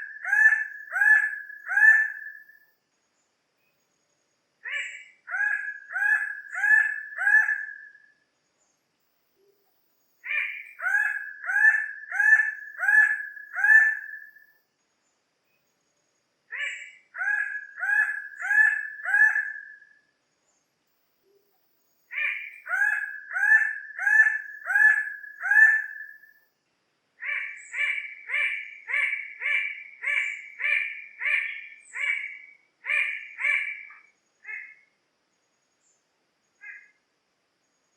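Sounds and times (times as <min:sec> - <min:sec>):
bird calling repeated notes: 0:00.0 - 0:02.6, 0:04.6 - 0:08.1, 0:10.2 - 0:14.4, 0:16.5 - 0:19.9, 0:22.1 - 0:26.3, 0:27.2 - 0:34.8.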